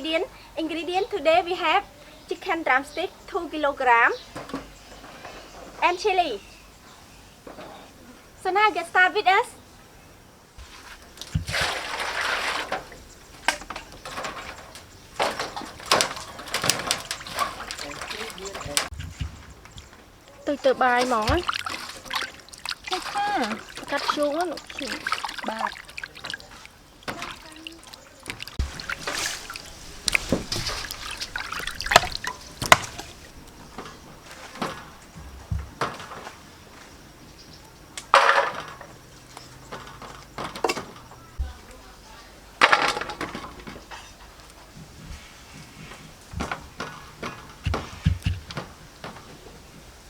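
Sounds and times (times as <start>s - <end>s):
water pouring and splashing: 10.6s - 36.4s
sharp knocks: 46.3s - 49.3s.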